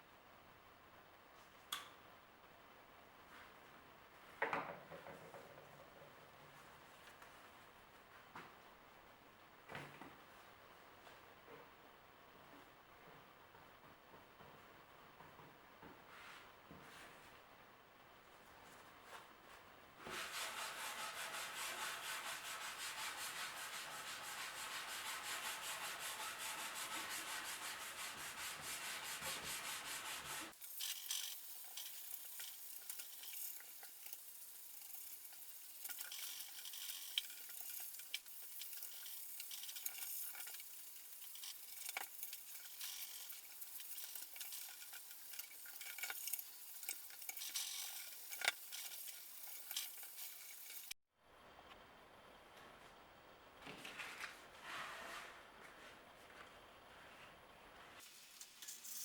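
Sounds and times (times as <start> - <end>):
crackly scraping with clicks: 30.8 - 51.0.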